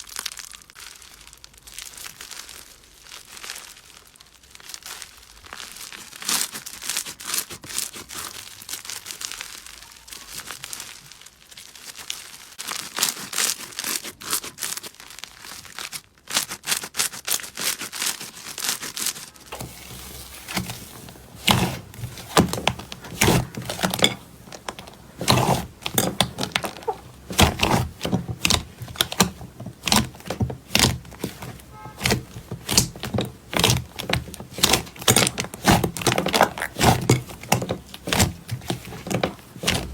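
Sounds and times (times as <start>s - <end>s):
slime crackling and popping: 0.0s - 19.6s, 23.0s - 39.9s
squishy slime thuds: 19.5s - 39.9s.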